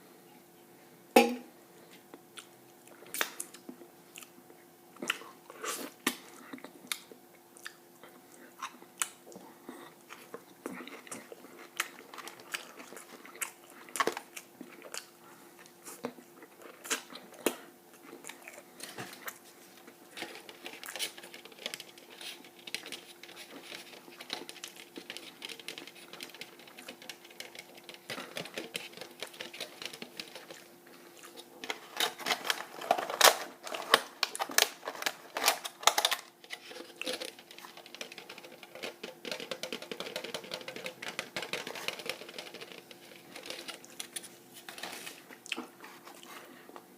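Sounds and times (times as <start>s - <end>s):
faint steady hum: 0.0s - 46.9s
chewing and biting food: 5.0s - 32.0s.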